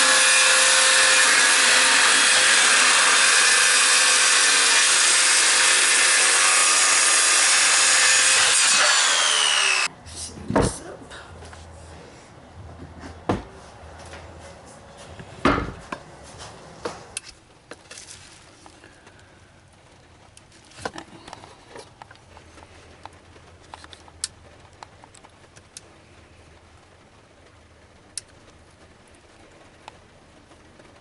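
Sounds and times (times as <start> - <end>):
faint steady hum: 9.8 - 31.0.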